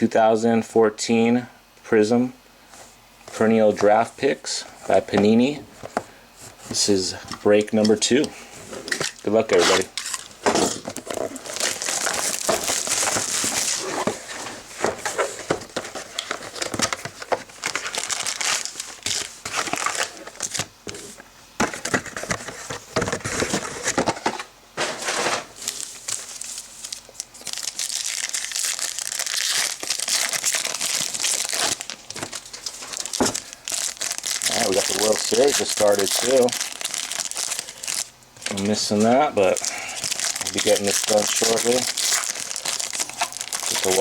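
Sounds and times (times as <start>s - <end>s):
plastic wrapping crinkling and tearing: 8.9s - 20.7s, 25.6s - 44.0s.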